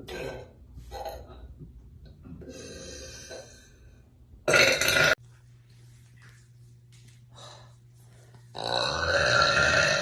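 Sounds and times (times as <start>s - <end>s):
loud deep burp: 4.5s - 5.2s, 8.6s - 10.0s.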